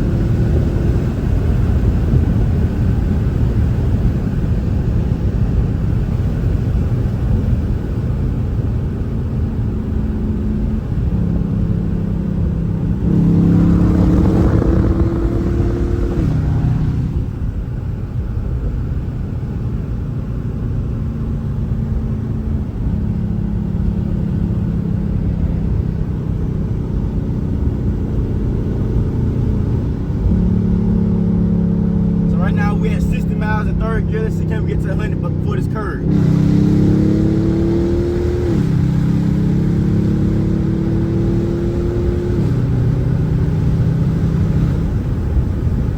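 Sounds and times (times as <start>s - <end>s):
loud engine accelerating: 9.3s - 17.7s, 21.4s - 45.9s.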